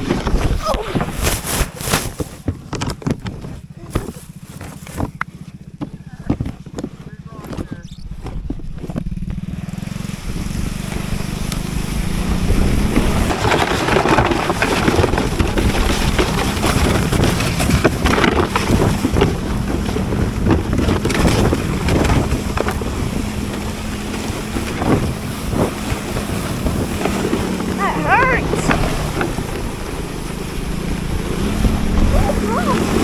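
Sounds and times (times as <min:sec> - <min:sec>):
off-road vehicle engine running: 0:00.0 - 0:33.0
wind rushing over microphone: 0:07.4 - 0:33.0.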